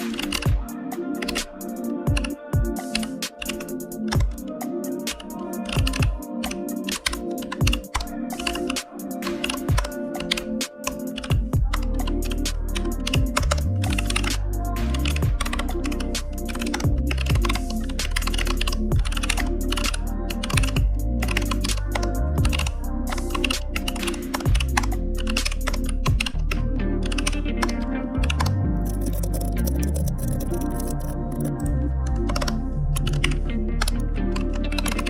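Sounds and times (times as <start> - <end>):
keyboard typing: 0.0 - 35.0
music with beat and bass: 0.0 - 35.0.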